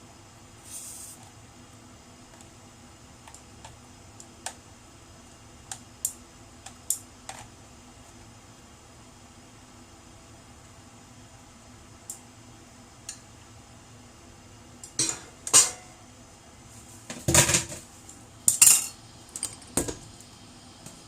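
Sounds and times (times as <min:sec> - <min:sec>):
cookware and utensils clattering: 0:15.0 - 0:16.0, 0:18.6 - 0:19.6.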